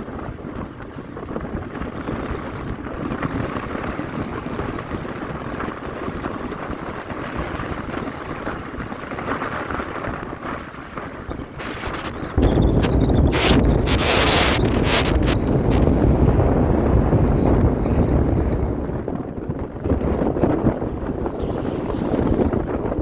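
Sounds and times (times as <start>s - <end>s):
wind buffeting: 8.7s - 23.0s.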